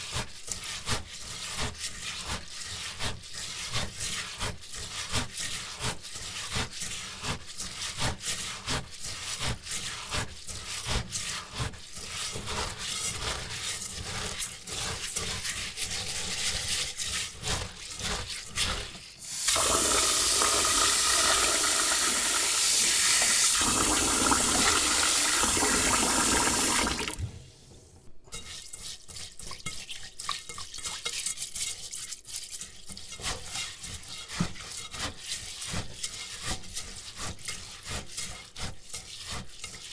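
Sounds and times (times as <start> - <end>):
rice rubbed and swished in bowl: 0.0 - 39.9
tap running: 19.2 - 27.3.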